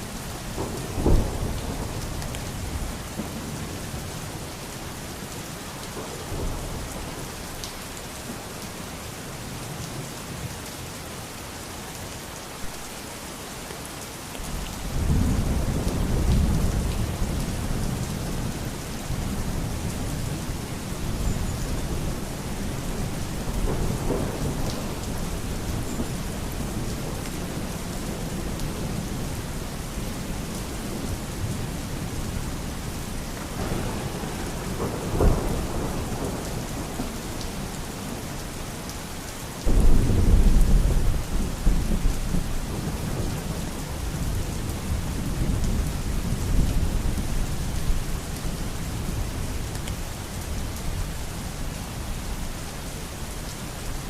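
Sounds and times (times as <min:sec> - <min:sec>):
heavy rain: 0:00.0 - 0:54.0
rolling thunder: 0:19.1 - 0:29.4, 0:33.6 - 0:37.7, 0:39.6 - 0:43.3
sharp thunderclap: 0:39.7 - 0:42.0.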